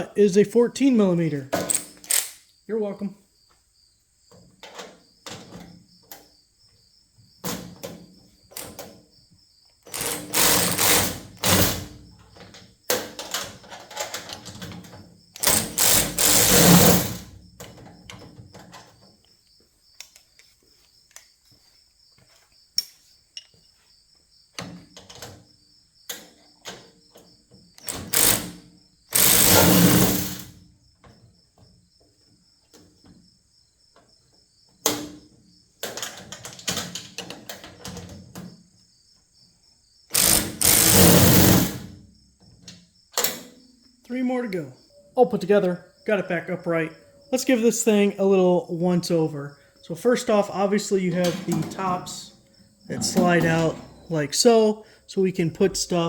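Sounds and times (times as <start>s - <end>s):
power tool bursts: 1.7s - 2.4s, 9.9s - 12.0s, 15.4s - 17.3s, 27.9s - 30.6s, 40.1s - 42.0s, 52.9s - 54.4s.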